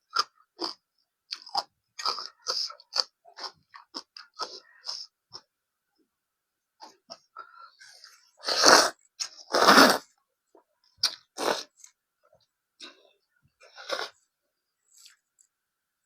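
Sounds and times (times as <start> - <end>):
chewing and mouth clicks: 0.1 - 5.5.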